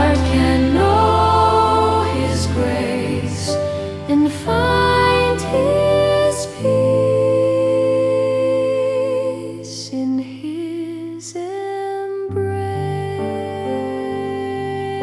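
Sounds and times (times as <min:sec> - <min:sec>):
low sustained accompaniment: 0:00.0 - 0:09.0
person singing slow song: 0:00.0 - 0:15.0.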